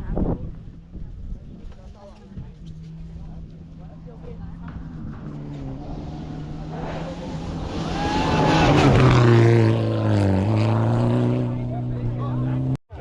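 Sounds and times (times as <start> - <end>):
rally car engine at high revs: 4.4 - 12.8.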